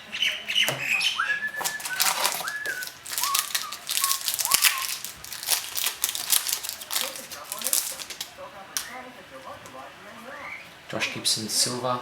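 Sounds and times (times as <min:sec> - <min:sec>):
pet bird whistling: 0:00.1 - 0:05.1, 0:10.2 - 0:10.8
trading cards clicking: 0:01.6 - 0:09.0.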